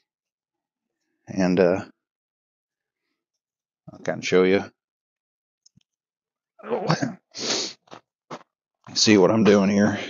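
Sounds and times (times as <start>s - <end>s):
man talking: 1.3s - 1.9s, 3.9s - 4.7s, 8.9s - 10.0s.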